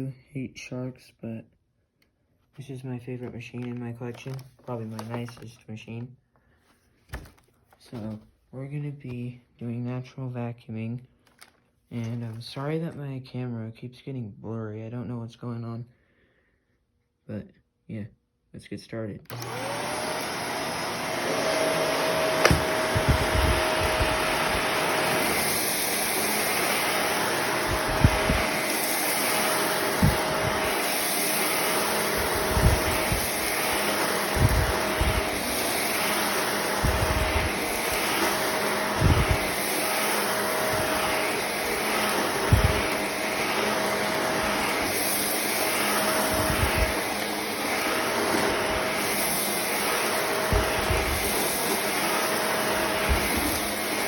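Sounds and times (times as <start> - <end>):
vacuum cleaner running: 19.3 - 54.0.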